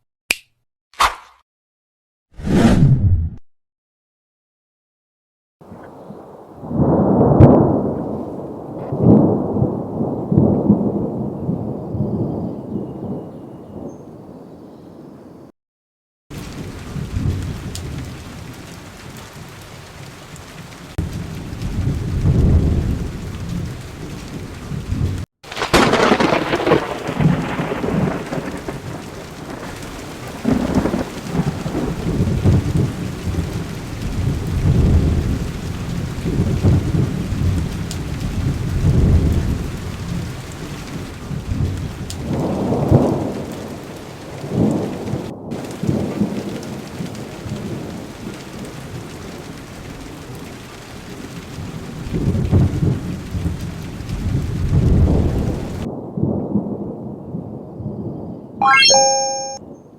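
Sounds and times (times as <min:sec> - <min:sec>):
thunder rumbling: 0:05.7 - 0:12.3, 0:20.9 - 0:40.3, 0:52.1 - 0:56.8
sharp thunderclap: 0:06.6 - 0:11.1, 0:21.0 - 0:23.7, 0:24.9 - 0:39.6
heavy rain falling: 0:16.3 - 0:56.3.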